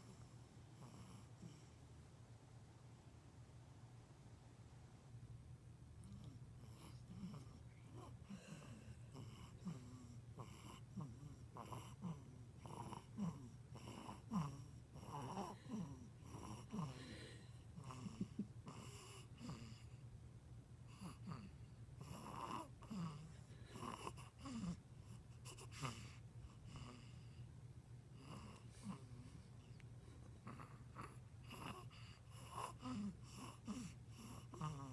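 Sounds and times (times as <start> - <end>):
person snoring: 6.0 - 20.0, 20.9 - 27.3, 28.2 - 29.7, 30.4 - 34.9.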